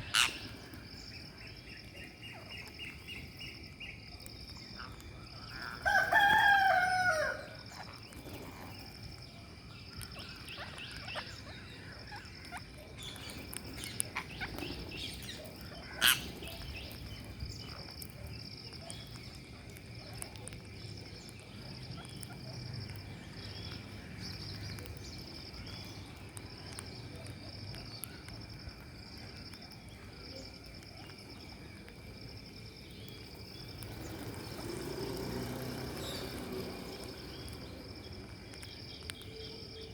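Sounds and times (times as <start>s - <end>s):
faint chirps: 0.0s - 39.9s
pulsing insect trill: 0.0s - 39.9s
parakeet squawk: 0.1s - 0.5s, 16.0s - 16.3s.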